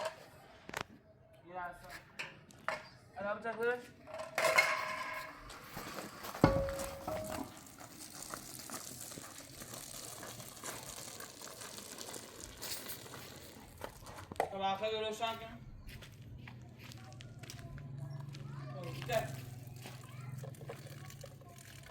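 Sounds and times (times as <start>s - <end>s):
faint rustling and crinkling: 5.2s - 14.4s.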